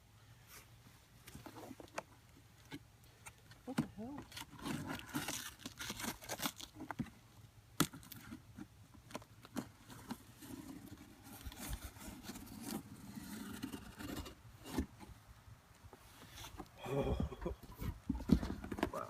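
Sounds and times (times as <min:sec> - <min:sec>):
packaging scraping and rustling: 0:04.3 - 0:07.0.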